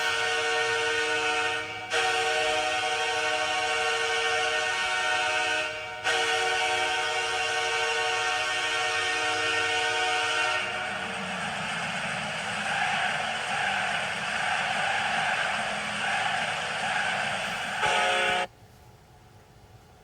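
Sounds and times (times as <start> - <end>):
goal horn blasting a chord: 0.0 - 11.4, 17.8 - 18.5
dull rushing noise: 6.4 - 18.5.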